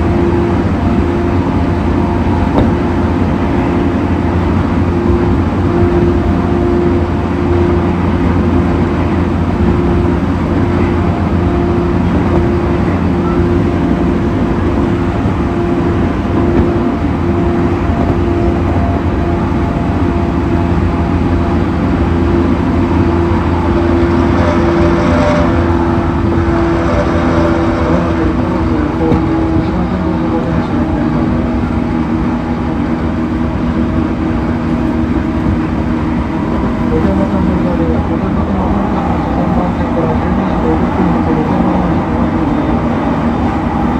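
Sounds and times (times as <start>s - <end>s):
low tonal hum: 0.0s - 43.9s
train car rumble: 0.0s - 43.9s.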